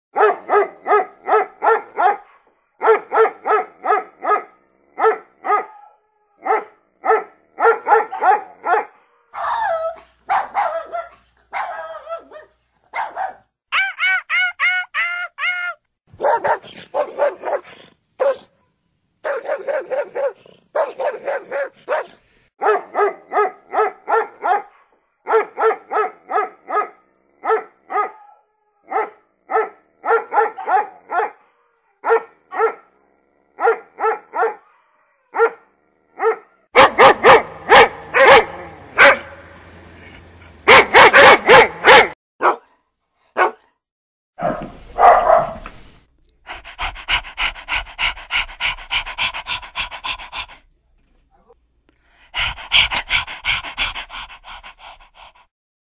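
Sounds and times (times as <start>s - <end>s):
dogs barking: 0.2s - 13.5s, 16.2s - 18.5s, 19.2s - 33.0s, 33.6s - 39.5s, 40.6s - 42.7s, 43.4s - 43.7s, 44.4s - 45.6s
background hiss: 44.4s - 46.1s.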